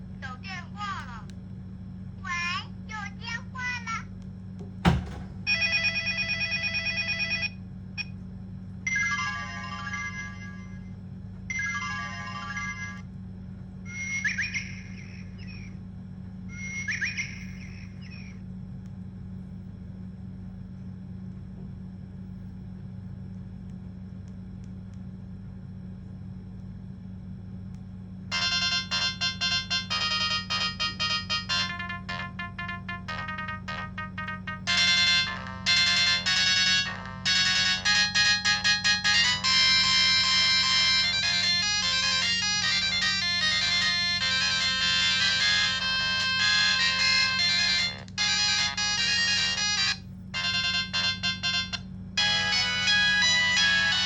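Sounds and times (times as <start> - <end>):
steady low hum: 0.0 - 54.0
thump: 4.8 - 5.4
fast ringtone melody: 28.3 - 54.0
mobile phone alert tones: 28.3 - 54.0.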